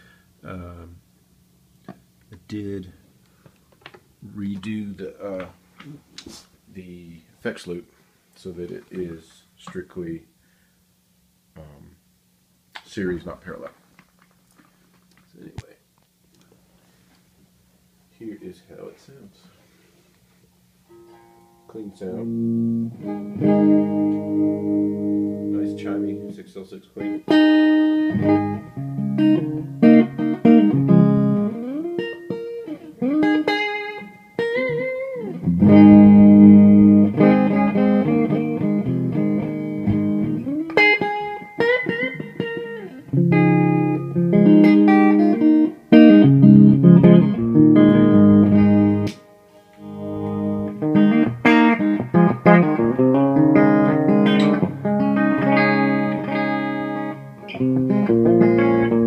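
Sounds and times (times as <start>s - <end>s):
clean electric guitar: 20.8s - 59.0s.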